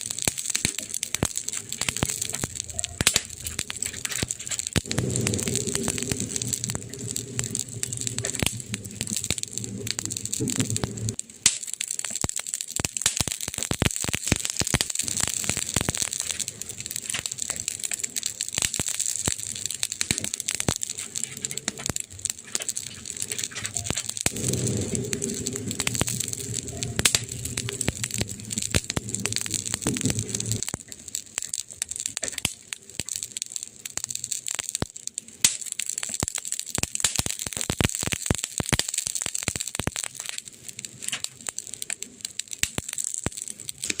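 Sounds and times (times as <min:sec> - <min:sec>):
wood fire crackling: 0:00.0 - 0:44.0
low hum: 0:03.4 - 0:11.2, 0:22.8 - 0:30.8.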